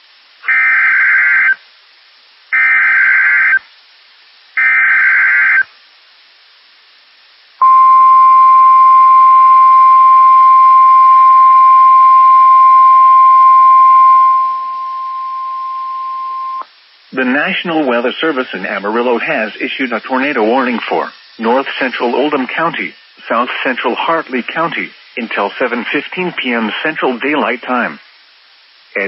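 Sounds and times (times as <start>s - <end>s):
steady single-pitch attention tone: 7.6s - 16.6s.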